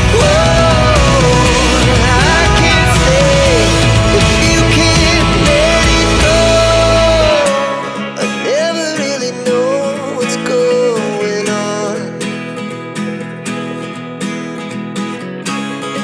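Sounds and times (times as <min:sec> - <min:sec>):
gliding melody line: 0:00.0 - 0:08.3
strummed acoustic guitar: 0:00.0 - 0:16.0.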